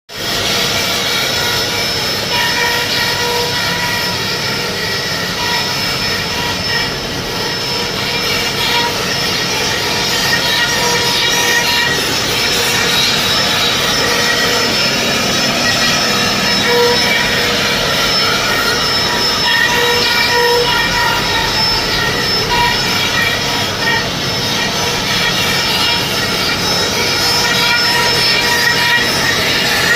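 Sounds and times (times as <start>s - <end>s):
router cutting wood: 0.2s - 29.9s
faint whine: 3.4s - 26.3s.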